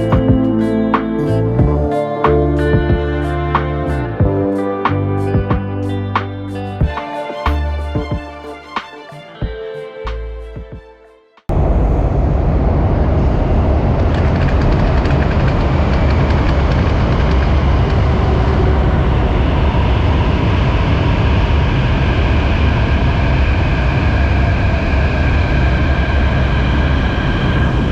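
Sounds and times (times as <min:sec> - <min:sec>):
vehicle rumbling: 0:11.5 - 0:27.9.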